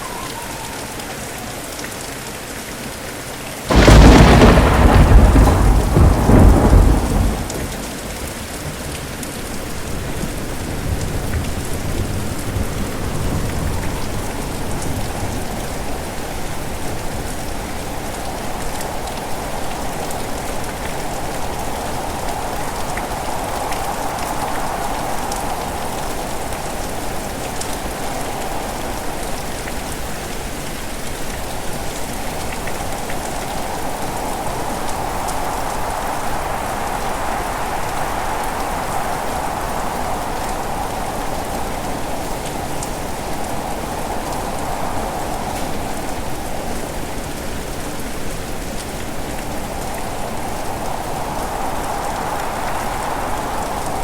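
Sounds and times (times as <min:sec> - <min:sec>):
steady rain falling: 0:00.0 - 0:54.0
thunder rumble: 0:03.7 - 0:26.8, 0:49.0 - 0:54.0.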